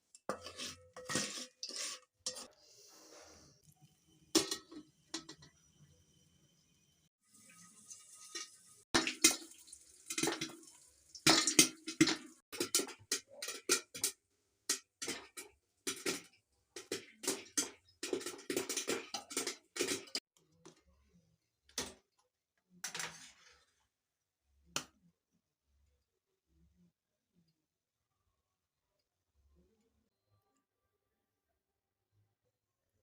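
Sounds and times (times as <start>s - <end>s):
popcorn popping: 4.3s - 5.6s, 11.2s - 20.2s.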